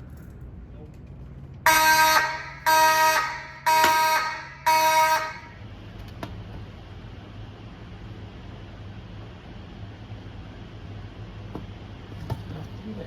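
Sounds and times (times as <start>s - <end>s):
fire alarm horn blasts: 1.6s - 5.6s.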